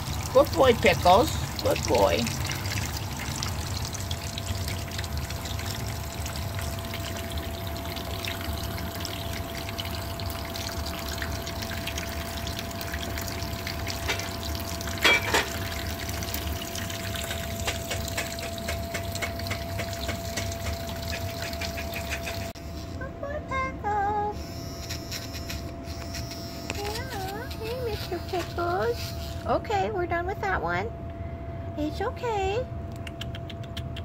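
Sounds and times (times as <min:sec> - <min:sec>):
shower water splashing: 0:00.0 - 0:22.6
faint whine: 0:22.5 - 0:33.0.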